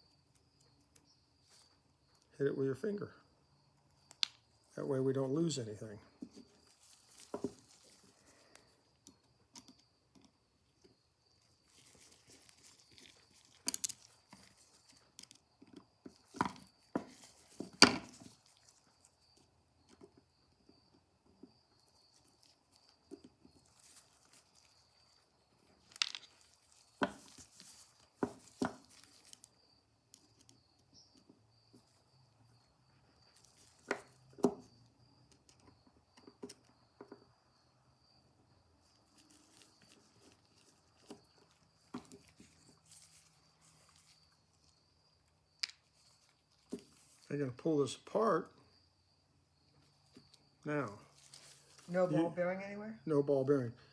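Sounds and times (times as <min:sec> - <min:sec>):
small metal parts clicking: 0:12.4 - 0:15.4, 0:25.8 - 0:27.0.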